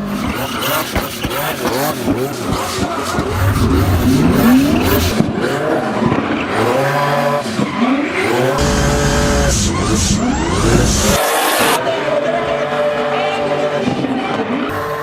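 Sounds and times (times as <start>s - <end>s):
car engine revving: 0.0s - 11.8s, 14.7s - 15.0s
tyres squealing: 8.6s - 11.8s.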